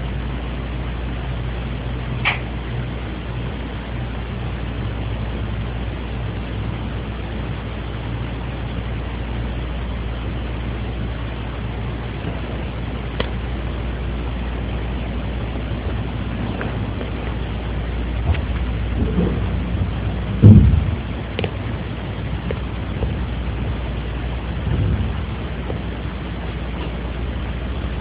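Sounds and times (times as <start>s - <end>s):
room noise hiss and hum: 0.0s - 28.0s.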